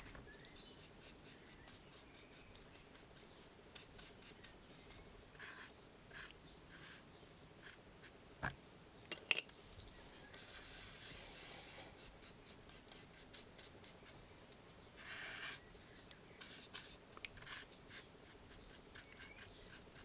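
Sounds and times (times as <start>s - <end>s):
paint brush rubbing and scratching: 10.3s - 14.2s.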